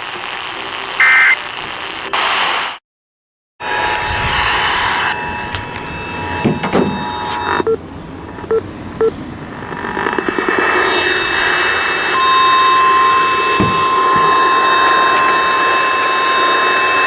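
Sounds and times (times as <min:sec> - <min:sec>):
radio static: 0:00.0 - 0:02.8, 0:03.6 - 0:17.0
short beeps: 0:01.0 - 0:01.4, 0:04.6 - 0:09.1, 0:12.1 - 0:16.7
two-tone attention signal: 0:01.0 - 0:01.4, 0:03.6 - 0:09.1, 0:10.7 - 0:17.0.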